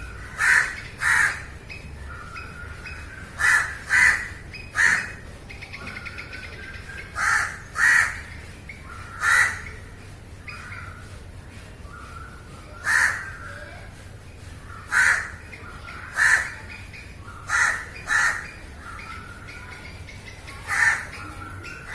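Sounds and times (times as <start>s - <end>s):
low steady rumble: 0.0s - 21.9s
crows cawing: 0.3s - 2.6s, 3.2s - 5.2s, 7.2s - 8.3s, 9.0s - 9.8s, 12.8s - 13.5s, 14.7s - 15.4s, 16.0s - 16.6s, 17.5s - 18.6s, 20.7s - 21.9s.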